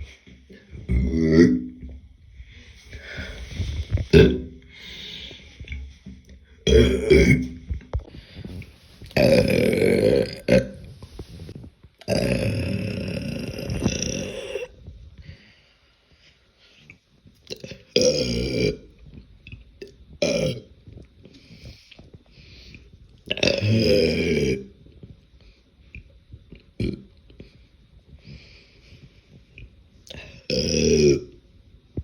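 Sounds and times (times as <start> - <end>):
woman belching: 0.9 - 1.9, 4.1 - 4.6, 6.7 - 7.6, 9.2 - 10.8, 12.0 - 14.8, 17.5 - 18.8, 20.2 - 20.7, 23.3 - 24.7, 30.5 - 31.3.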